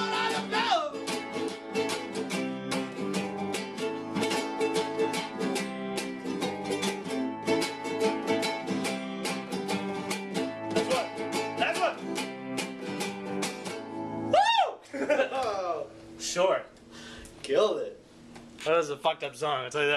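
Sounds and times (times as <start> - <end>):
acoustic string instrument strummed: 0.0 - 14.3.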